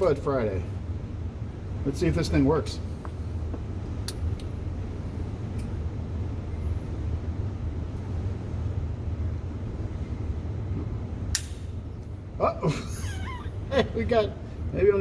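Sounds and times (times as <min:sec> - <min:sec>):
low background hum: 0:00.0 - 0:15.0
sharp click: 0:11.3 - 0:11.7.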